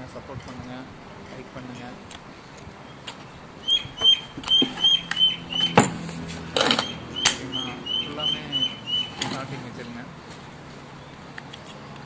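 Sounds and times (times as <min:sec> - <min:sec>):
small bird chirping: 0:02.8 - 0:09.5.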